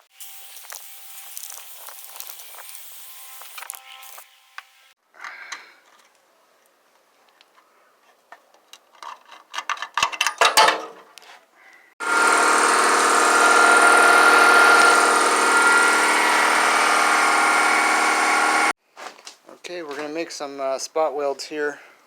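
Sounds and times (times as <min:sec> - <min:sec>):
electric power tool whining: 0:12.0 - 0:18.8.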